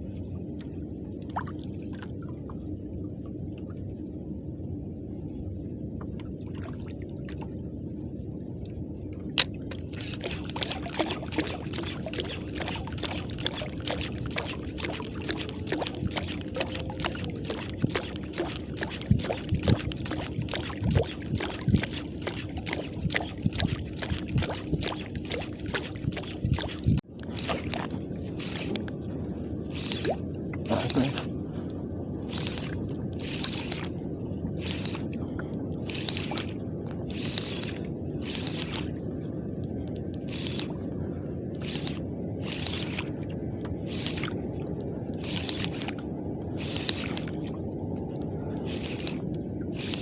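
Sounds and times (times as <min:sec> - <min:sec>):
water sloshing against hull: 0:00.0 - 0:50.0
boat engine running: 0:09.2 - 0:39.1, 0:48.4 - 0:50.0.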